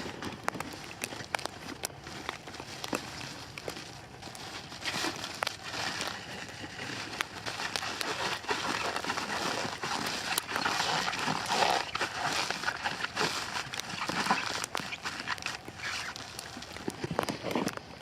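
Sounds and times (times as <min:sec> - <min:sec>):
plastic wrap crinkling: 0:00.0 - 0:18.0.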